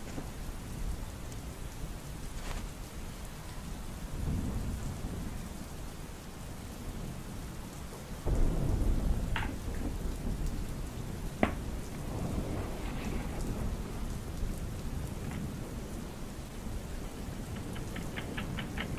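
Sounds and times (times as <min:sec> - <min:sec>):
heavy rain falling: 0:00.0 - 0:18.9
thunder rumbling: 0:03.8 - 0:18.9
sharp thunder cracks: 0:08.2 - 0:15.7.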